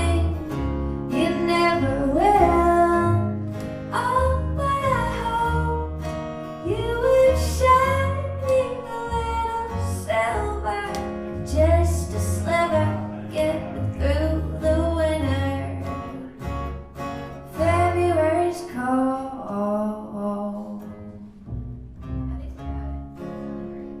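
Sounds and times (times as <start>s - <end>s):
woman singing: 0.0s - 16.3s, 17.5s - 21.3s
low bass notes: 0.0s - 18.4s, 21.0s - 24.0s
plucked guitar: 0.0s - 24.0s.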